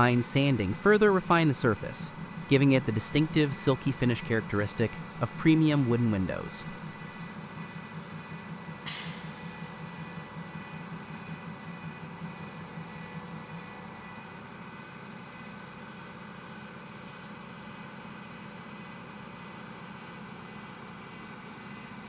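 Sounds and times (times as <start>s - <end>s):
low throbbing: 0.0s - 8.8s
machinery humming: 0.0s - 17.2s.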